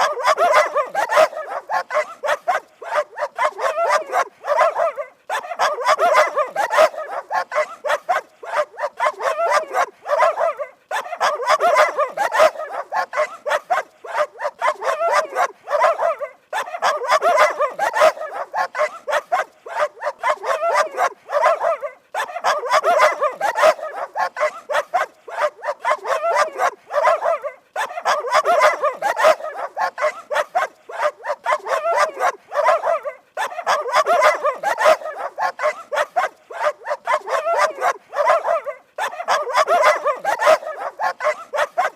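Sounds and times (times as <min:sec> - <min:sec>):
dogs barking rapidly: 0:00.0 - 0:41.9.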